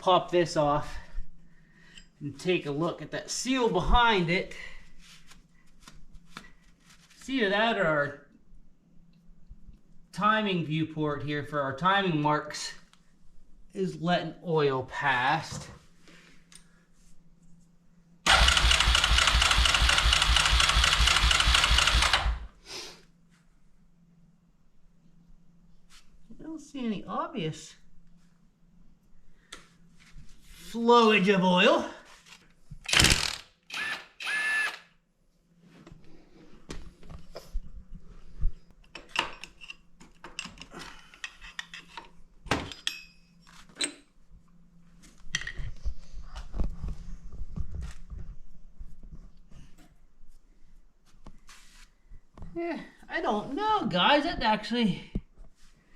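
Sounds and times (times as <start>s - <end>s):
faint steady hum: 0.0s - 55.9s
electric starter cranking engine: 18.3s - 22.5s, 32.9s - 34.8s
metal tools and parts clinking: 41.2s - 44.0s.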